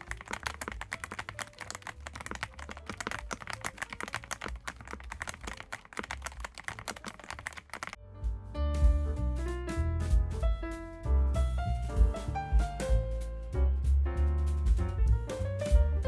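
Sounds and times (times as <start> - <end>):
fast typing on mechanical keyboard: 0.0 - 8.0.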